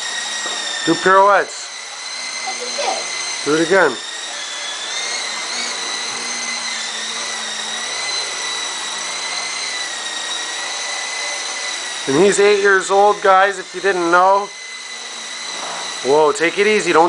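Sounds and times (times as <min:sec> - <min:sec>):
toy helicopter rotor whine: 0:00.0 - 0:17.0.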